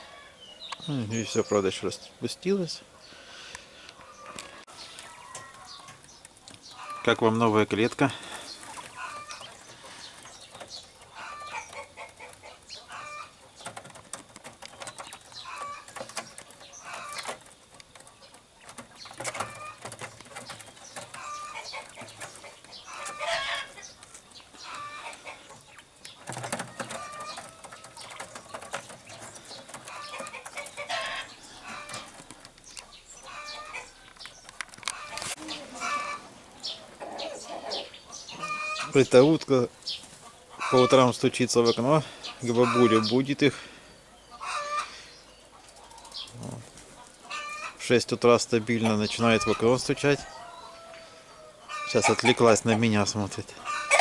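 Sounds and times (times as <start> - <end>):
chickens clucking: 0.0 - 54.0
rustling: 4.3 - 36.5.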